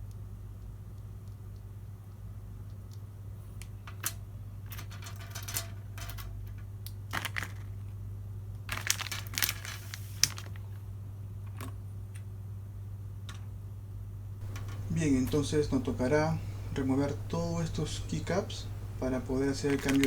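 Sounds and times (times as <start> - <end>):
light clicks of small parts: 0.0 - 7.8, 13.2 - 13.5, 14.4 - 20.0
plastic packaging crinkling: 7.1 - 8.0, 8.6 - 10.8, 14.4 - 20.0
steady low hum: 10.6 - 20.0.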